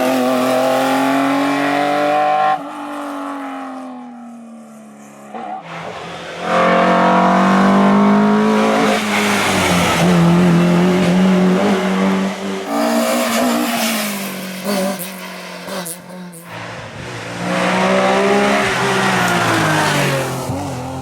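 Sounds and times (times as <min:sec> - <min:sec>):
racing car engine passing: 0:05.2 - 0:21.0.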